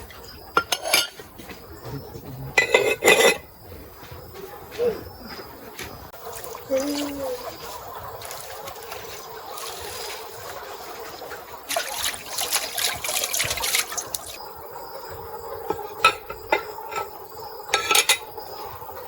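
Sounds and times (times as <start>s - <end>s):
liquid pouring: 6.3s - 10.4s, 11.2s - 14.4s.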